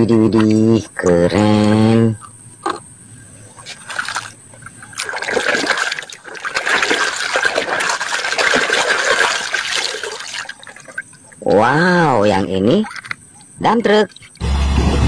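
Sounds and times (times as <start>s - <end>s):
water splashing and trickling: 3.5s - 14.4s.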